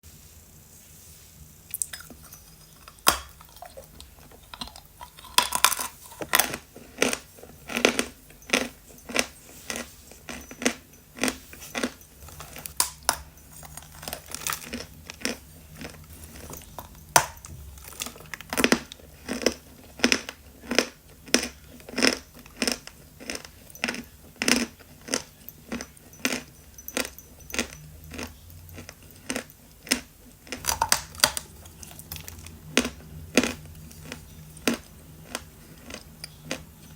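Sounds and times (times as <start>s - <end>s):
chalk being chewed: 1.7s - 36.9s.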